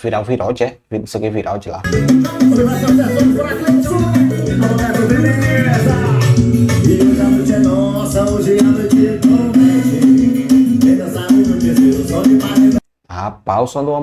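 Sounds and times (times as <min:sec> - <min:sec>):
heavy bass line: 0:01.9 - 0:12.8
song through car sound system: 0:01.9 - 0:12.8.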